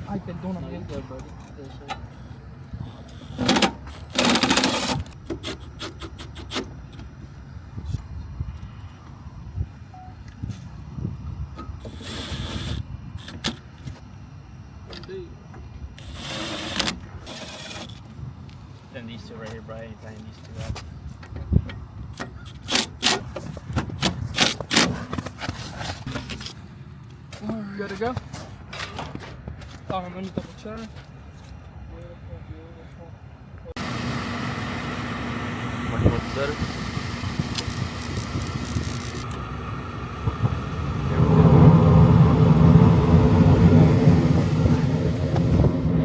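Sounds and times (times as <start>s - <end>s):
hvac motor rumble: 33.8s - 46.0s.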